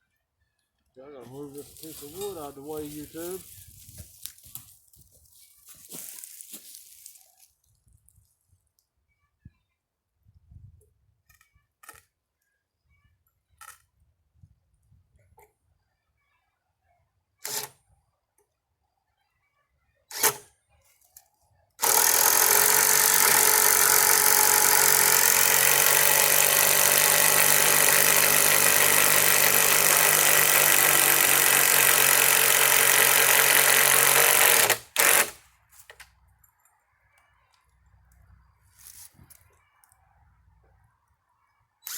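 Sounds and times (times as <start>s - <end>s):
power drill driving screw into wood: 17.4s - 17.8s, 20.1s - 20.5s, 21.8s - 35.4s.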